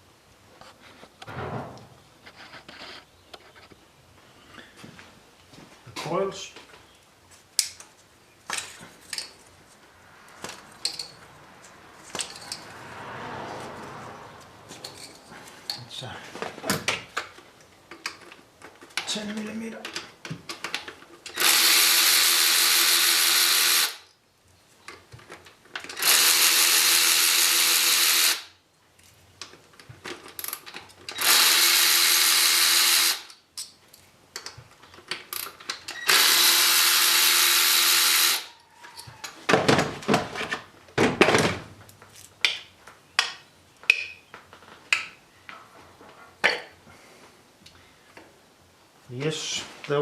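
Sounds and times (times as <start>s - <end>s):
sharp clicks and knocks of parts: 7.6s - 9.5s, 12.1s - 12.7s, 14.8s - 21.5s, 24.8s - 26.2s, 29.0s - 31.4s, 33.1s - 36.3s, 38.2s - 45.6s.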